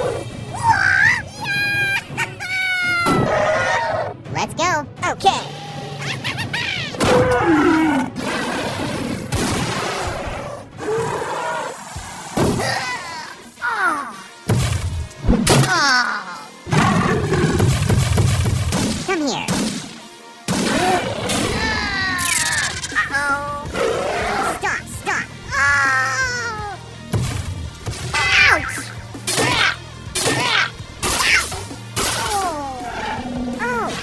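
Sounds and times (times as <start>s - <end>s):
cartoon music: 0.6s - 3.4s, 6.0s - 7.5s, 21.4s - 23.8s, 24.5s - 26.8s, 28.0s - 33.0s.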